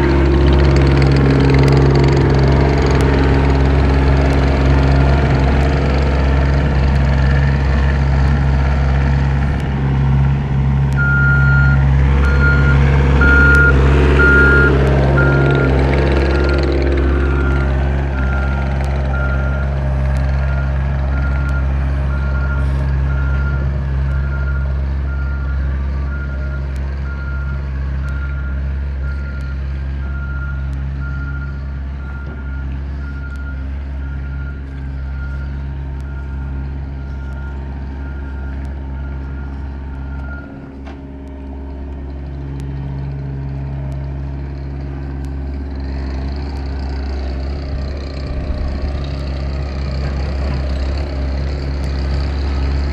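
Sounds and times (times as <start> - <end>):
skid steer engine running: 0.0 - 52.9
reverse alarm beeping: 11.0 - 19.7.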